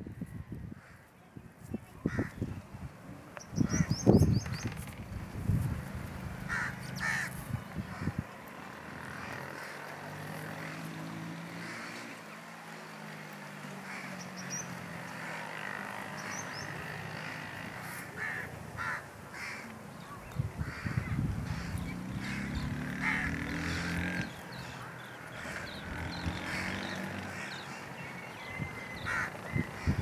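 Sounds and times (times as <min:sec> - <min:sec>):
birds giving harsh calls: 0:03.4 - 0:05.0, 0:06.3 - 0:08.2, 0:13.8 - 0:30.0.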